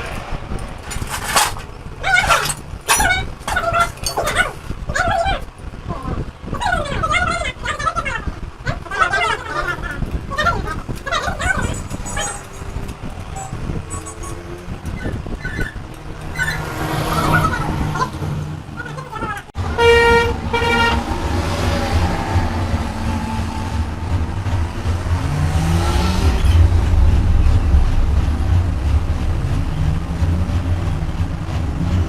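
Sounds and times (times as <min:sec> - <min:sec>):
truck engine rumbling: 0:00.0 - 0:32.0
vehicle horn blasts: 0:19.6 - 0:21.2.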